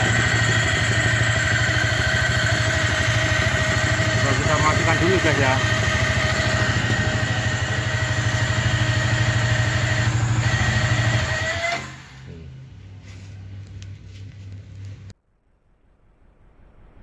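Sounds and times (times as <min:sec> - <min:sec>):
motorcycle engine idling: 0:00.0 - 0:11.2.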